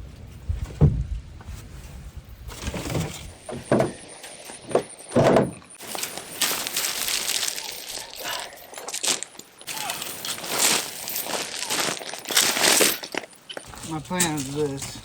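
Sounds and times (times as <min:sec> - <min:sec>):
rustling and scraping of tools: 0:00.2 - 0:15.0
dull knocks and thumps: 0:00.6 - 0:01.2, 0:02.5 - 0:04.0, 0:04.6 - 0:05.7.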